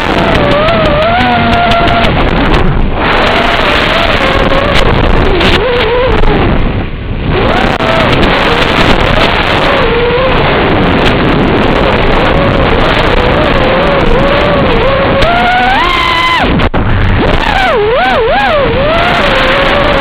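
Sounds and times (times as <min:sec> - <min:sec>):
quadcopter motors whining: 0:00.0 - 0:06.5
wind noise on microphone: 0:00.0 - 0:20.0.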